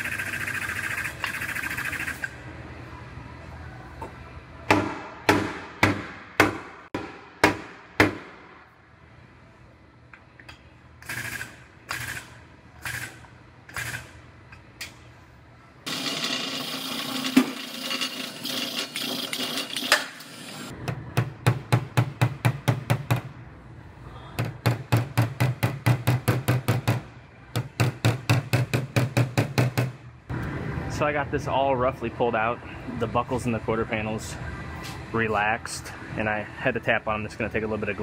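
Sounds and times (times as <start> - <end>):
steady noisy whirr: 0.0 - 38.0.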